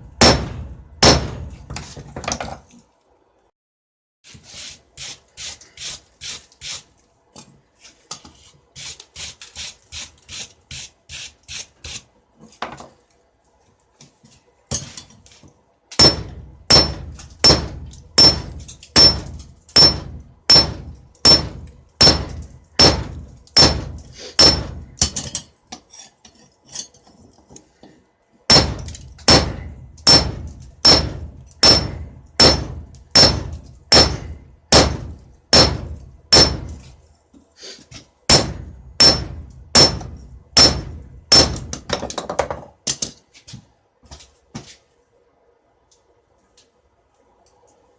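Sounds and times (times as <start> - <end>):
hammer ringing on an anvil: 16.0 - 23.0, 28.5 - 34.4, 38.3 - 41.6.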